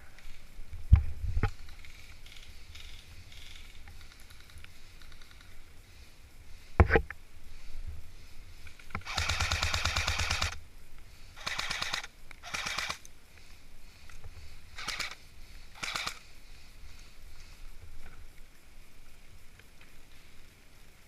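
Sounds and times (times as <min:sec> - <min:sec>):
airsoft rifle full-auto bursts: 0:09.0 - 0:10.6, 0:11.4 - 0:13.1, 0:14.8 - 0:16.3.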